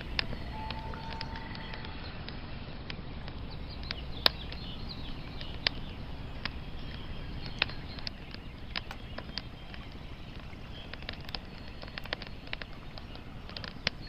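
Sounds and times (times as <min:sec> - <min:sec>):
steady low background noise: 0:00.0 - 0:14.0
wood fire crackling and popping: 0:03.2 - 0:14.0.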